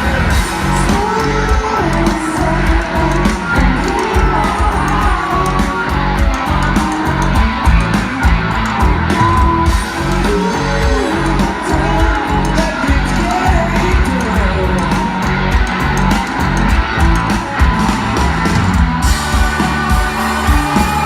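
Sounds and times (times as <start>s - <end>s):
person singing: 0.0s - 15.3s
drum beat: 0.0s - 21.0s
electric guitars: 0.0s - 21.0s.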